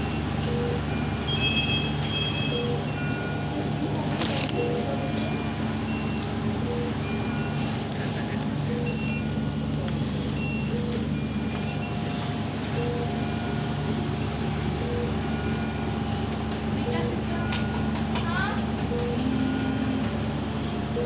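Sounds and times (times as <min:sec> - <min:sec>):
short electronic beeps: 0:00.0 - 0:03.5, 0:04.6 - 0:07.9, 0:08.6 - 0:09.4
steady machine hum: 0:00.0 - 0:21.0.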